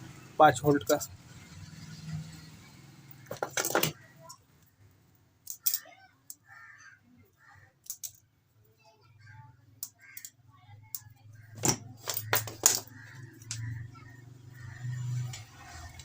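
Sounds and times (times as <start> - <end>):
metallic clicks of small parts: 5.4 - 6.4, 7.8 - 8.2, 9.8 - 13.7.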